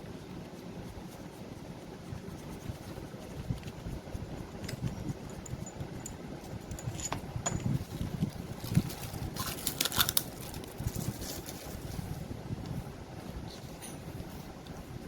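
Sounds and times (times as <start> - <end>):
handling noise: 4.5 - 14.8
metal parts clattering: 6.7 - 7.8, 8.6 - 10.6.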